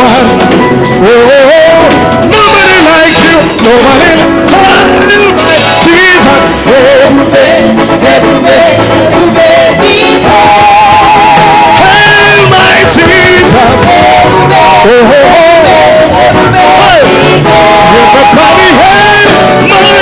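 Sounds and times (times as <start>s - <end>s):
band playing: 0.0s - 20.0s
person singing long notes: 5.8s - 20.0s.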